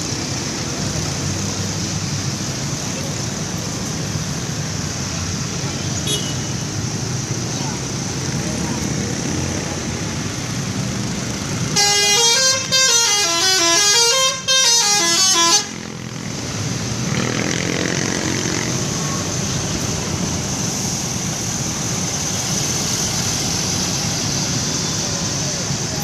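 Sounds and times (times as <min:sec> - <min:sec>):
traffic and engine noise: 0:00.0 - 0:26.0
bus horn playing a tune: 0:11.7 - 0:15.8.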